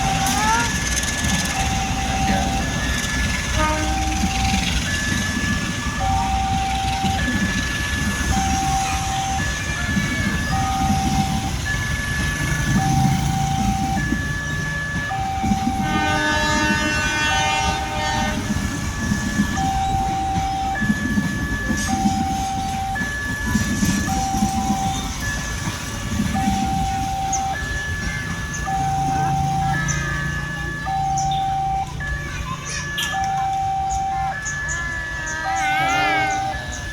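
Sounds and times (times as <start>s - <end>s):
locomotive horn: 0.0s - 5.0s, 15.1s - 20.9s, 32.9s - 36.9s
level-crossing warning siren: 0.0s - 36.9s
passing train rumble: 0.0s - 36.9s.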